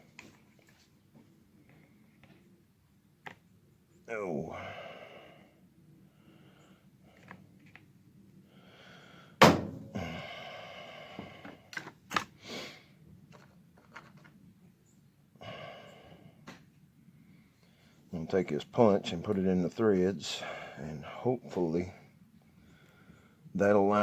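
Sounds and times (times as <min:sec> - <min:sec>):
breathy exhales: 0:04.5 - 0:05.6, 0:08.5 - 0:11.6, 0:15.4 - 0:16.4
sharp thunk: 0:09.4 - 0:10.0.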